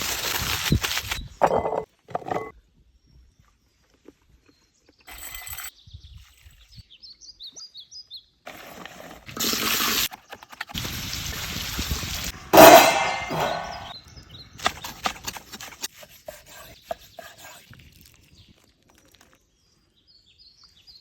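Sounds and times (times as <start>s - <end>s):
cooking hiss: 10.7s - 12.8s
metal cookware clang: 12.6s - 13.9s.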